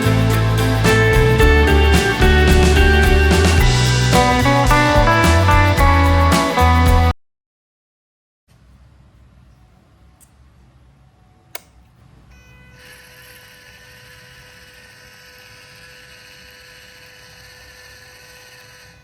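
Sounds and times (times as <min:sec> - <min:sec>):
sharp click: 0:11.5 - 0:11.8
toy car electric motor whine: 0:12.6 - 0:19.0.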